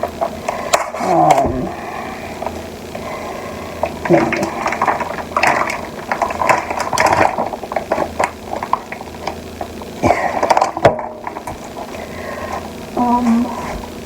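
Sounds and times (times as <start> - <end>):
small clicks and knocks: 3.8 - 12.8.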